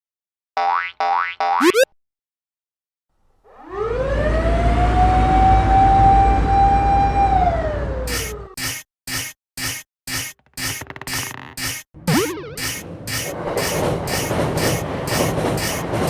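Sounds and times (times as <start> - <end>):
siren-like tone: 11.6 - 15.7.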